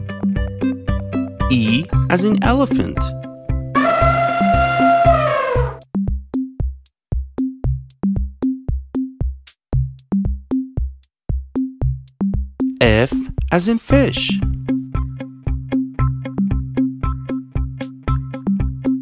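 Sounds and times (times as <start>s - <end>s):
drum machine beat: 6.1s - 14.6s
electronic music: 12.8s - 14.5s.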